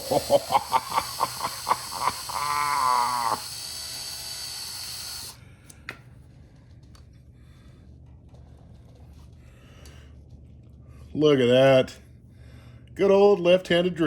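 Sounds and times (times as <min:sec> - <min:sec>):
power drill whining: 0:00.0 - 0:05.4.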